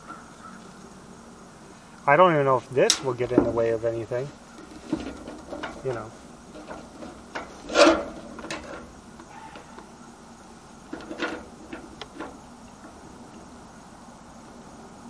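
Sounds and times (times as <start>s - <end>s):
metal roofing knocks and scrapes: 2.9s - 9.7s, 10.9s - 13.0s.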